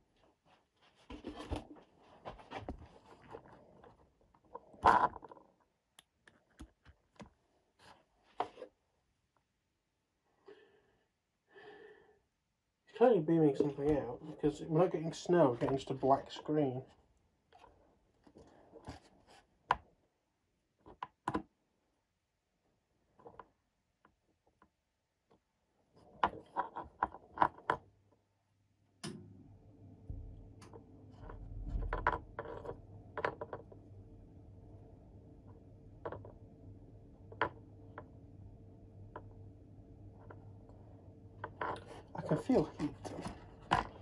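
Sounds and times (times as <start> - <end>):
low electrical hum: 27.2 - 44.0.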